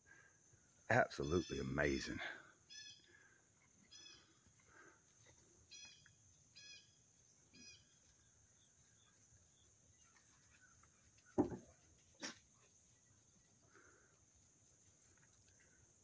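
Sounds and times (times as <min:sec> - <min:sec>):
bird chirping: 0:00.8 - 0:13.5
thump: 0:11.4 - 0:11.7.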